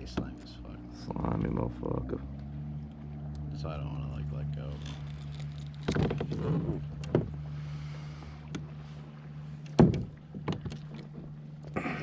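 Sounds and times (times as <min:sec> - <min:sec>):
steady low hum: 0:00.0 - 0:12.0
knocks on kayak hull: 0:09.7 - 0:11.2.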